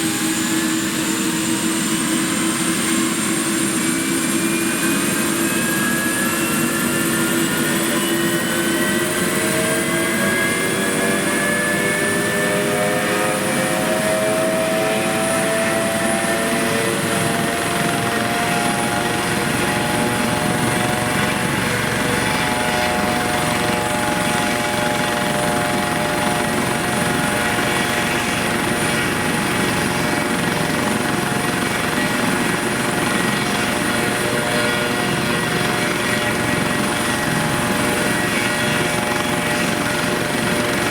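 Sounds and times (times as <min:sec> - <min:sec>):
helicopter turbines and rotors: 0:00.0 - 0:40.9
whining tones rising in pitch: 0:04.3 - 0:30.5.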